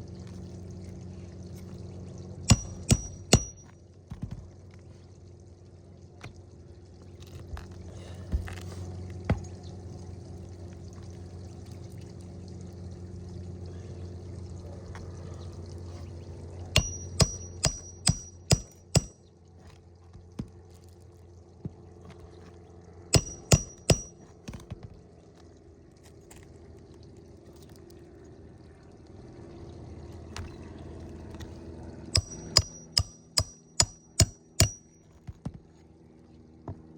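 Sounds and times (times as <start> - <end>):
hammer striking nails: 2.5 - 3.7, 16.8 - 19.2, 23.2 - 24.6, 32.2 - 35.4.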